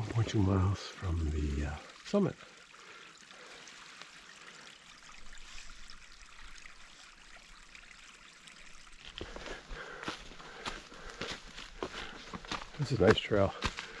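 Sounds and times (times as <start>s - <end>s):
stream running: 0.0s - 14.0s
footsteps on a trail: 9.0s - 14.0s.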